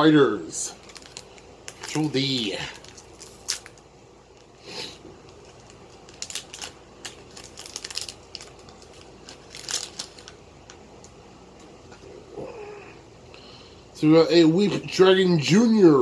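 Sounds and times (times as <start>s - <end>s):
wrapper crinkling and tearing: 0.7s - 4.6s, 5.2s - 11.1s.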